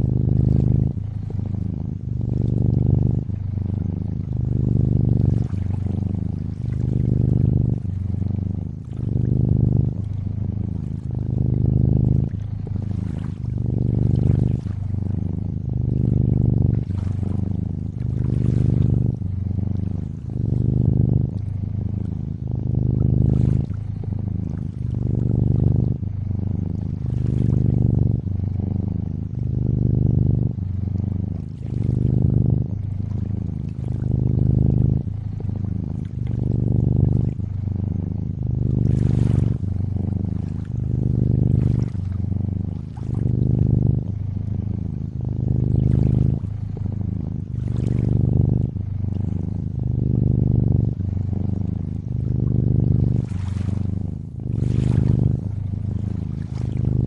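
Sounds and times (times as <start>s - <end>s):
cat purring: 0.0s - 57.0s
gentle lapping water: 0.0s - 57.0s.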